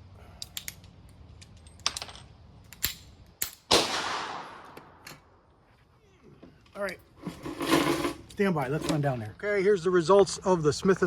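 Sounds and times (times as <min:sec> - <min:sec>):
metallic clicks of pistols handled: 0:00.2 - 0:03.7
loud gunshot with echo: 0:03.7 - 0:04.7.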